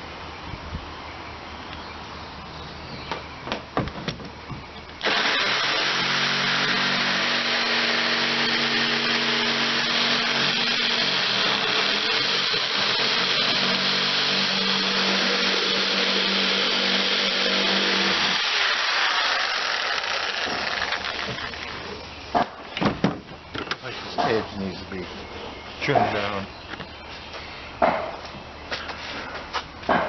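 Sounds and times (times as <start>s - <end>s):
electric power tool trimming plastic: 5.0s - 22.0s.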